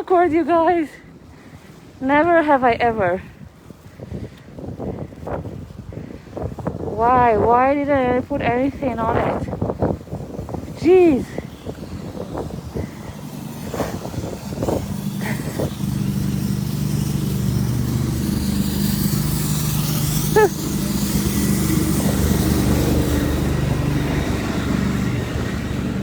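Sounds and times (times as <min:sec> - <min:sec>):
vehicle engine running: 0:10.5 - 0:26.0.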